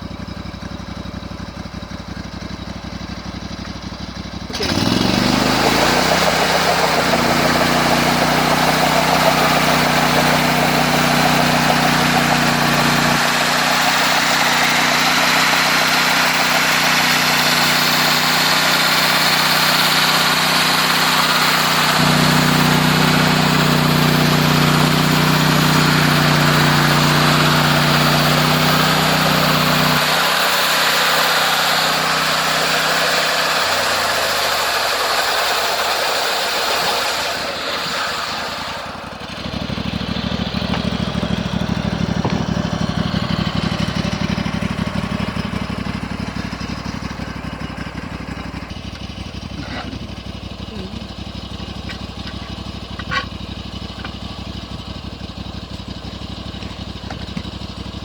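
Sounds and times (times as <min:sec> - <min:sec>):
sawmill engine drone: 0:00.0 - 0:58.0.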